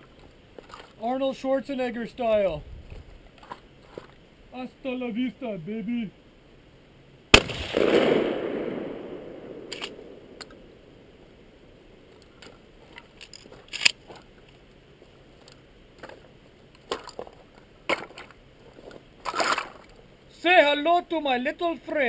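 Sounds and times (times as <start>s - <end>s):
shotgun blast: 7.3s - 11.2s.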